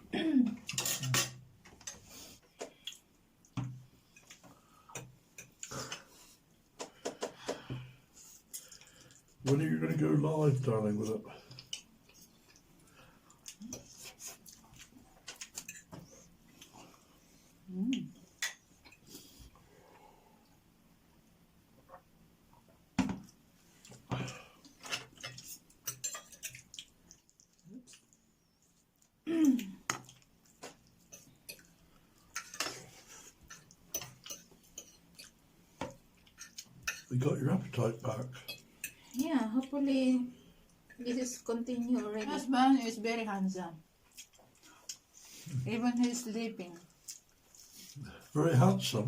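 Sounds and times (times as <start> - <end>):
cutlery clicking on plates: 0.7 - 2.0, 24.8 - 26.7, 33.5 - 35.3.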